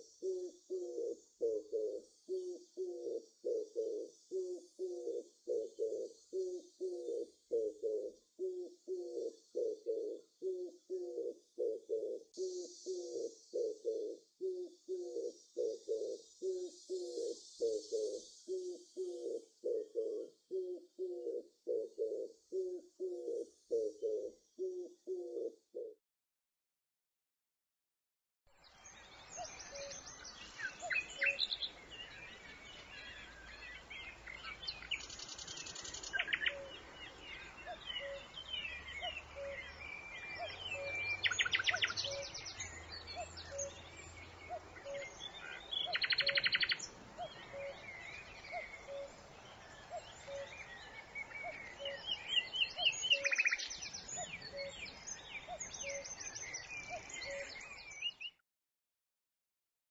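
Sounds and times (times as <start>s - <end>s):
songbirds singing and calling: 0.0s - 25.5s, 28.5s - 58.4s.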